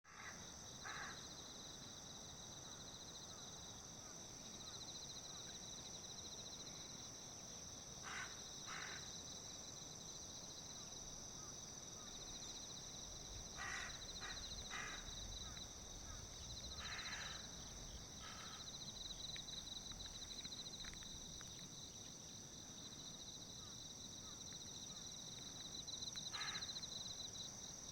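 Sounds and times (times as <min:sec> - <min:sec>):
crow cawing: 0:00.1 - 0:01.2, 0:08.0 - 0:09.1, 0:13.6 - 0:17.6, 0:18.2 - 0:18.7, 0:26.3 - 0:26.8.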